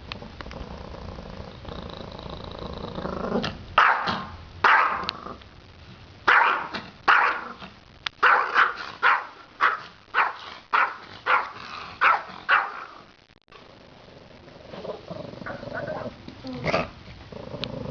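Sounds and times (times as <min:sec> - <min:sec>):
dog barking: 0:03.8 - 0:05.1, 0:06.3 - 0:07.6, 0:08.2 - 0:13.0.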